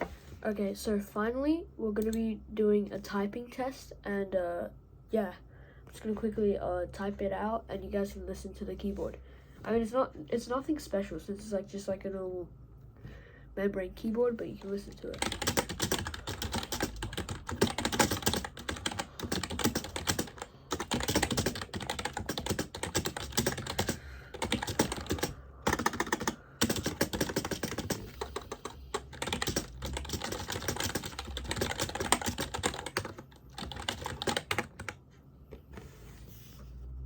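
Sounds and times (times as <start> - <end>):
fast keyboard typing: 14.6 - 35.0.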